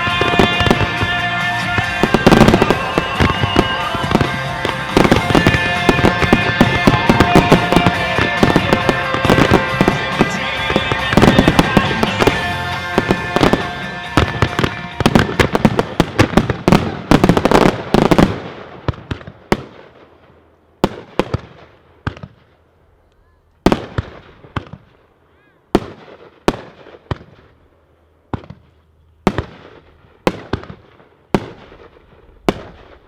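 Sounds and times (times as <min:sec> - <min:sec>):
music playing: 0:00.0 - 0:16.2
fireworks bursting: 0:00.0 - 0:22.6, 0:23.6 - 0:25.0, 0:25.7 - 0:27.6, 0:28.3 - 0:33.0.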